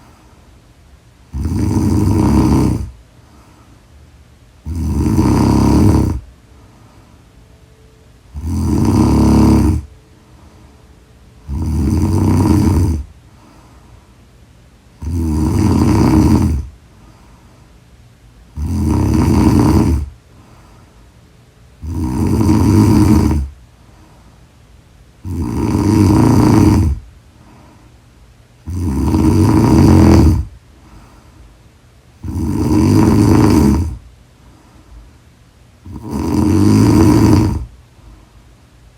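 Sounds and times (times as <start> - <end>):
quiet breathing: 0.0 - 38.9
woman snoring loudly: 1.3 - 3.0, 4.6 - 6.3, 8.3 - 9.9, 11.4 - 13.1, 15.0 - 16.7, 18.5 - 20.2, 21.8 - 23.5, 25.2 - 27.1, 28.6 - 30.6, 32.2 - 34.0, 35.8 - 37.7.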